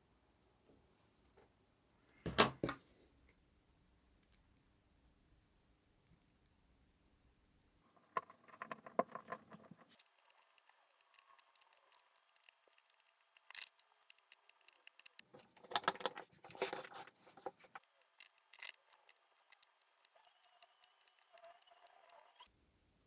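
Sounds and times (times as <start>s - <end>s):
light clicks of small parts: 4.2s - 4.7s, 9.6s - 22.5s
tools rattling and scraping: 15.2s - 17.8s.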